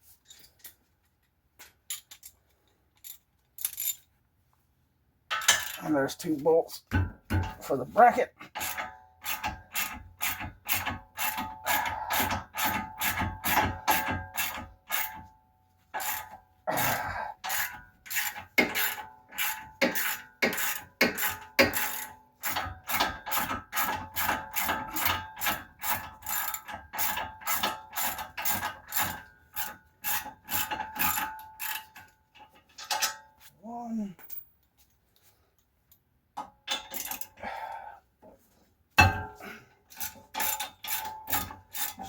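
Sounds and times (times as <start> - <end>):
ratchet wrench clicking: 8.6 - 15.2, 17.4 - 31.8.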